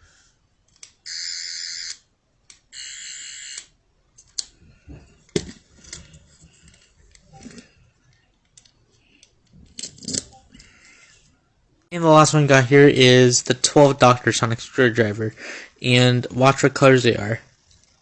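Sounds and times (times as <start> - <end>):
toy electronic buzzing effect: 1.1 - 2.0, 2.7 - 3.7.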